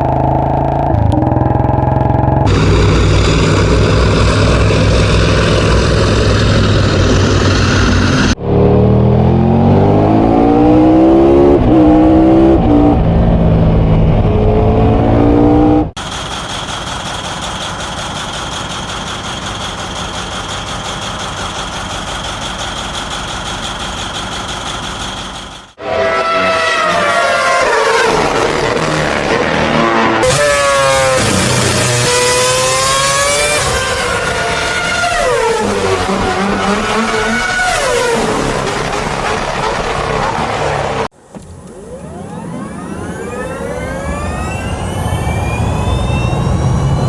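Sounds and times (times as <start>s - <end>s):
engine accelerating through gears: 0.0s - 47.0s
mechanical drone with high whine: 0.0s - 47.0s
engine running steadily: 0.9s - 8.4s, 15.6s - 25.8s.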